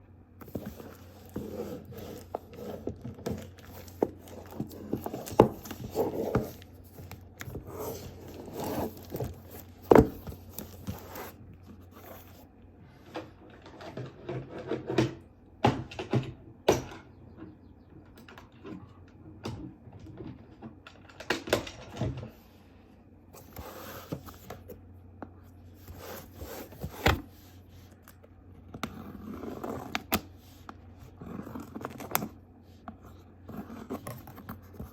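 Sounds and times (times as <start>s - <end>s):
packaging rustling and tearing: 0.4s - 11.4s.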